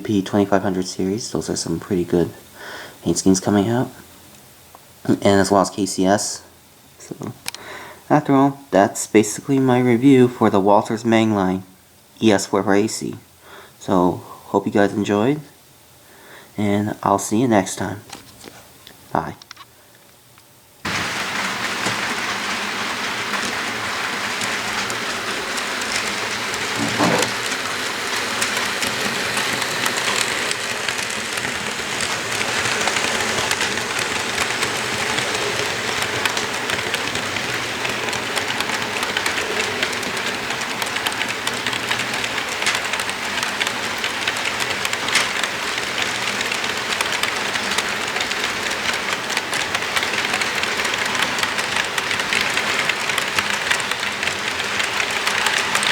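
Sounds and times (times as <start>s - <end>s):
model train hiss and whir: 0.0s - 55.9s
wheels clicking over rail joints: 20.8s - 55.9s.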